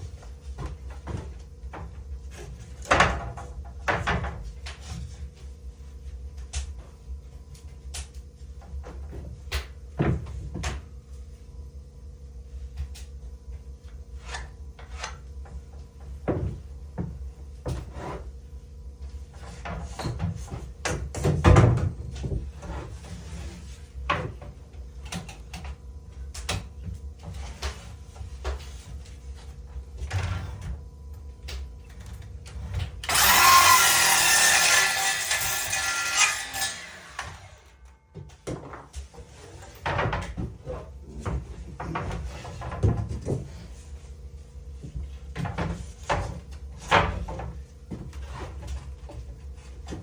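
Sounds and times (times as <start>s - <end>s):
wood and tools clattering: 31.9s - 43.8s
power tool running: 33.0s - 37.9s.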